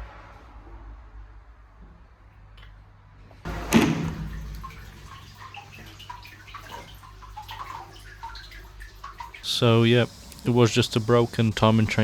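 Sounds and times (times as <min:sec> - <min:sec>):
liquid dripping: 0:03.5 - 0:11.5
liquid splashing: 0:03.5 - 0:12.0.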